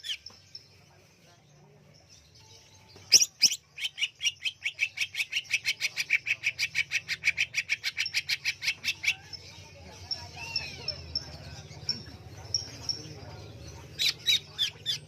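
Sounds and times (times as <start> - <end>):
bird singing fast repeated notes: 3.1 - 9.4.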